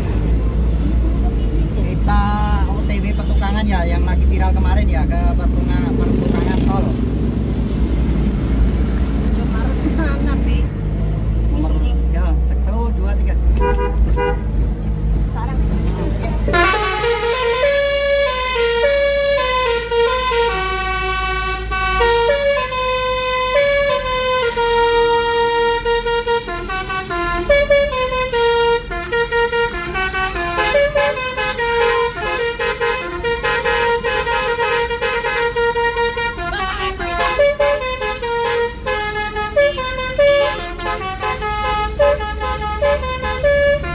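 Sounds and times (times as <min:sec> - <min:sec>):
bus multi-tone horn tune: 0:13.6 - 0:14.6, 0:16.4 - 0:43.9.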